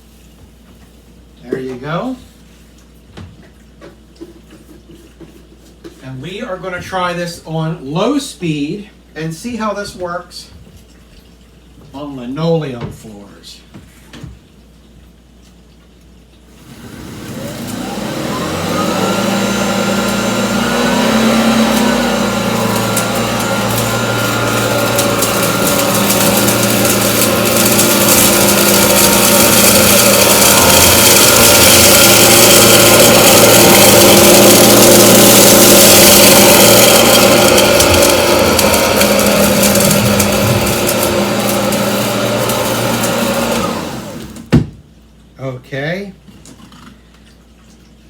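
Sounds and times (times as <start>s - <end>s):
vacuum cleaner motor whining: 16.6s - 44.5s
debris ticking in vacuum: 17.6s - 43.0s.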